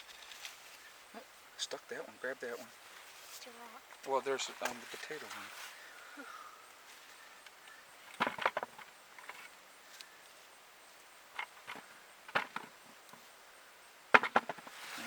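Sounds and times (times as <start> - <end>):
hand tool knocking and scraping soil: 14.1 - 15.0.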